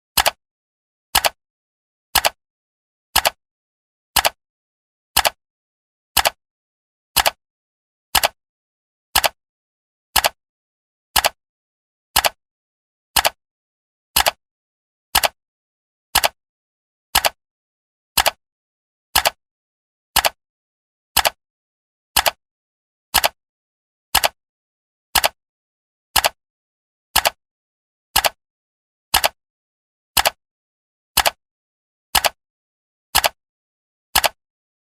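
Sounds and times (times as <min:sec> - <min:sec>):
timer ticking: 0:04.2 - 0:04.4, 0:06.2 - 0:06.4, 0:15.2 - 0:15.4, 0:21.2 - 0:21.4, 0:25.2 - 0:25.4, 0:32.2 - 0:32.4, 0:33.2 - 0:33.4, 0:34.2 - 0:34.4.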